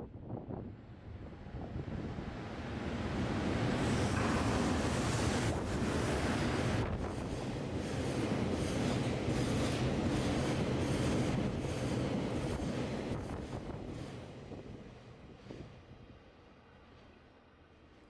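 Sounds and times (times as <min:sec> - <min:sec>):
freight train rumbling past: 0:00.3 - 0:16.1.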